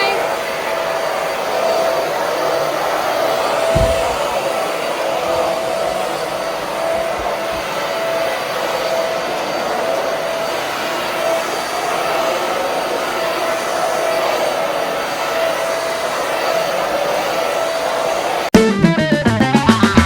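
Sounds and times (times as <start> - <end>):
vacuum cleaner running: 0.0 - 18.6
low thud: 3.6 - 7.7.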